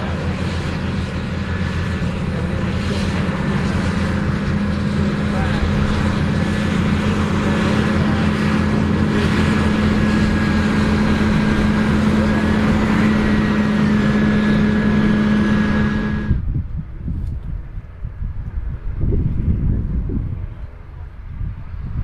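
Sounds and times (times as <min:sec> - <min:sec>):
faint high whine: 0:00.0 - 0:16.5
tractor diesel engine drone: 0:00.0 - 0:16.7.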